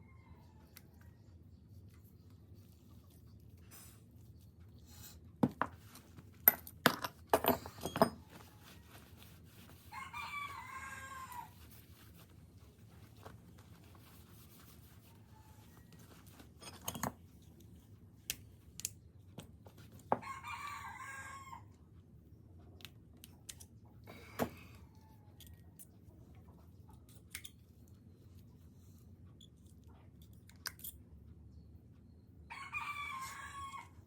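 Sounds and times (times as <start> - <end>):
rooster crowing: 9.9 - 11.6, 20.2 - 21.7, 32.5 - 34.0.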